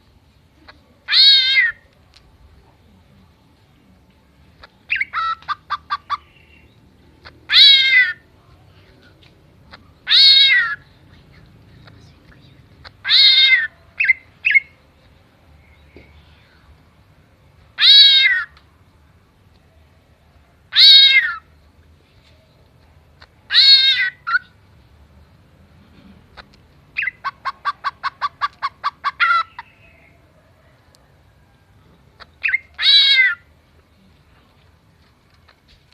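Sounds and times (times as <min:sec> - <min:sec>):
bird making meow-like calls: 0:01.1 - 0:01.8, 0:07.5 - 0:08.2, 0:10.0 - 0:10.8, 0:13.0 - 0:14.1, 0:17.8 - 0:18.5, 0:20.7 - 0:21.5, 0:23.5 - 0:24.5, 0:32.4 - 0:33.4
bird chirps: 0:04.6 - 0:07.8, 0:09.7 - 0:16.5, 0:26.4 - 0:30.3.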